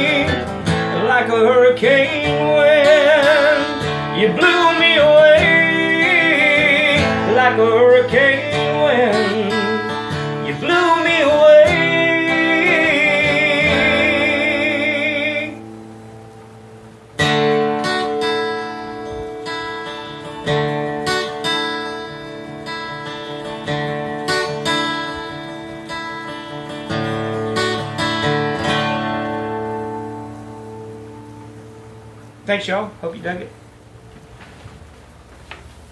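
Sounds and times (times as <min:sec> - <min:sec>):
man singing with vibrato: 0:00.0 - 0:16.1
acoustic guitar: 0:00.0 - 0:35.9.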